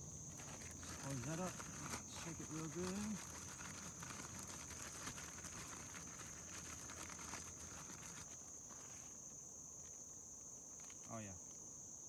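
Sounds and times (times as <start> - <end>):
fish shaken in a bag of breading: 0.4 - 8.3.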